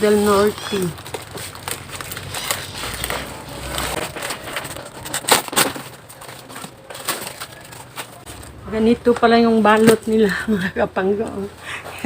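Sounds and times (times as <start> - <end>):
packaging crackling and tearing: 0.0 - 10.4.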